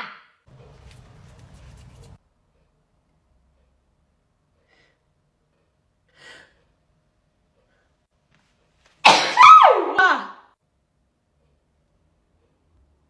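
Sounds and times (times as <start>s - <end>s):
person sneezing: 9.0s - 10.2s.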